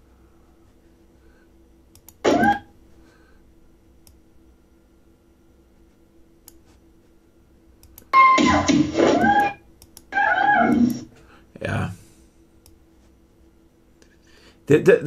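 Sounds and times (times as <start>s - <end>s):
faint steady hum: 0.0s - 15.0s
played-back recording snippet: 0.0s - 15.0s
computer mouse clicks: 1.9s - 2.2s, 6.4s - 6.8s, 7.8s - 8.1s, 9.8s - 10.1s.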